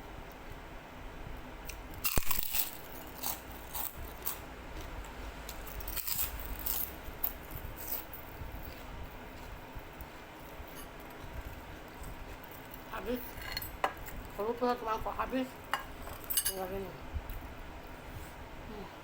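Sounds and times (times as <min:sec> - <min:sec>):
crackly chewing: 0:01.6 - 0:13.2
crunching bite of crisp food: 0:02.0 - 0:04.9.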